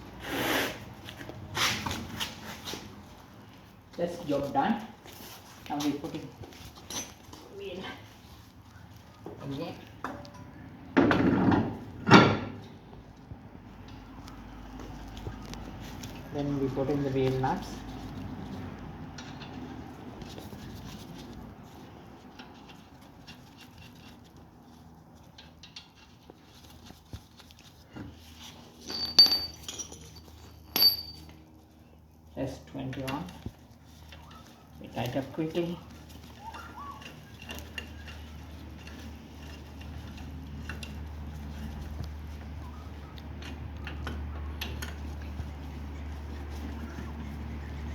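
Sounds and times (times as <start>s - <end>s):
wheel nuts clicking and scraping: 4.3s - 8.4s, 13.8s - 47.9s.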